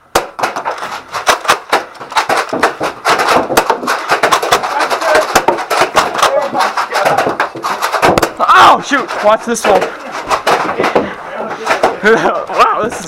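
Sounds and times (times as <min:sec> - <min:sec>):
foam darts striking: 0:00.0 - 0:08.4
steady din: 0:00.0 - 0:13.0.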